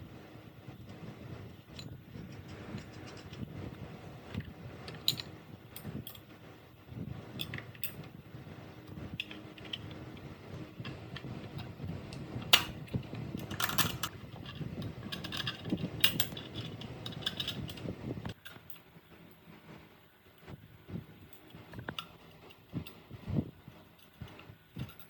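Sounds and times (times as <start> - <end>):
metal tools clicking and clinking: 13.4 - 17.8.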